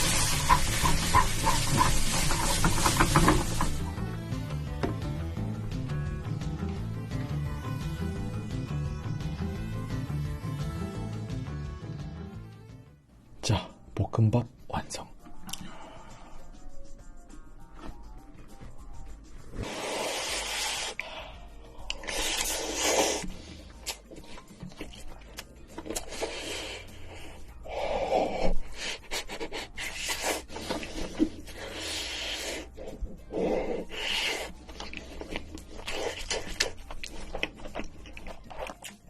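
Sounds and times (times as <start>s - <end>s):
utensil scraping a dish: 0.0s - 3.8s
chewing: 21.8s - 26.7s, 33.8s - 39.0s.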